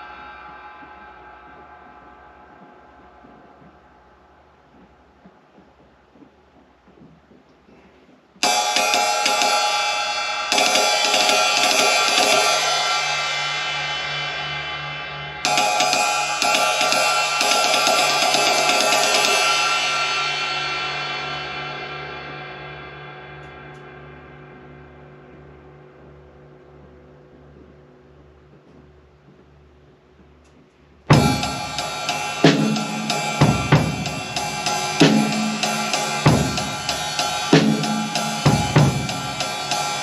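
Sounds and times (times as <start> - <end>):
ride cymbal strokes: 0.0 - 4.4, 8.4 - 25.6, 31.1 - 40.0.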